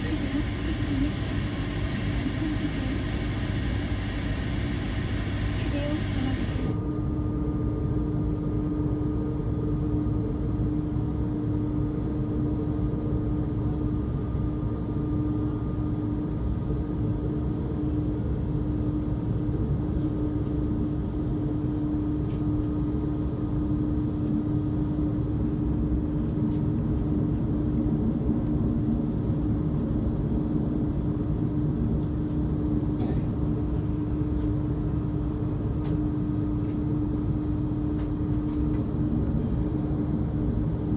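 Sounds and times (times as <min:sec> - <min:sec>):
jet engines idling: 0:00.0 - 0:06.7.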